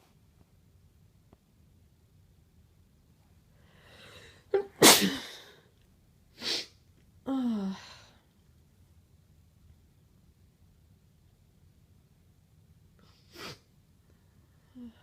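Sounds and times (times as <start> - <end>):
person sneezing: 4.6 - 5.6.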